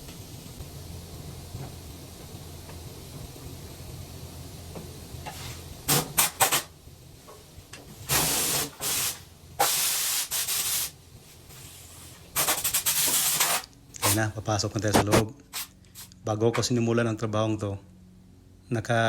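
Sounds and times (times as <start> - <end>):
hissing spray bursts: 5.2 - 6.8, 8.0 - 14.3, 15.5 - 16.2.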